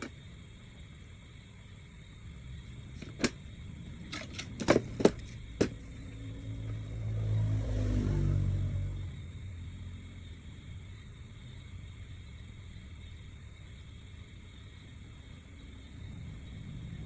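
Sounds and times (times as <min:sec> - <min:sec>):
vehicle passing by: 0:05.4 - 0:10.8.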